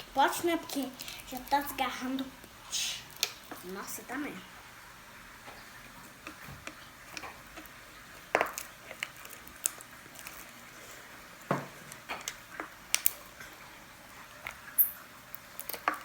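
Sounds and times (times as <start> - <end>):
wet slime squishes: 0.0 - 4.1, 5.4 - 16.0.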